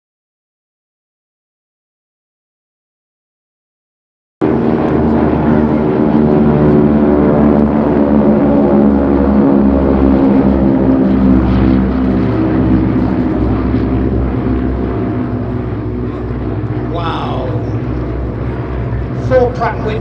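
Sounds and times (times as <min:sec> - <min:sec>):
propeller aircraft droning: 0:04.4 - 0:20.0.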